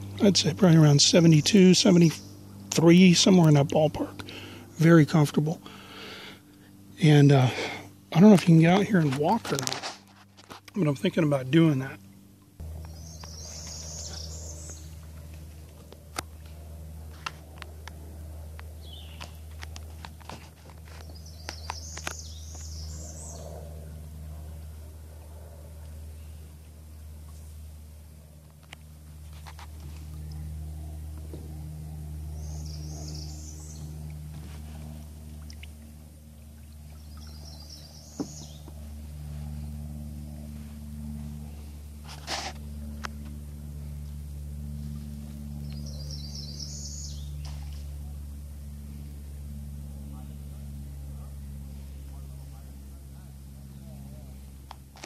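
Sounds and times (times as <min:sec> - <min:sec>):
birds chirping: 0:00.0 - 0:09.5, 0:12.6 - 0:27.1, 0:30.0 - 0:41.8, 0:45.4 - 0:48.2
low engine drone: 0:00.0 - 0:55.0
low hum: 0:00.0 - 0:55.0
bird chirping: 0:12.8 - 0:15.0, 0:21.0 - 0:23.7, 0:32.3 - 0:34.0, 0:37.0 - 0:38.8, 0:45.6 - 0:47.4.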